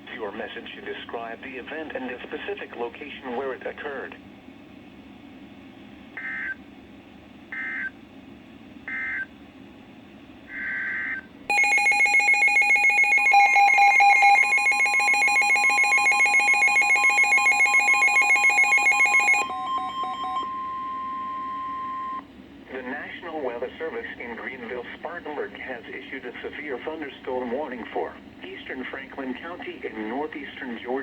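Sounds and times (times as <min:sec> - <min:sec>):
rapidly pulsing electronic alert beep: 0:10.5 - 0:22.2
steady single-pitch warning tone: 0:10.5 - 0:22.3.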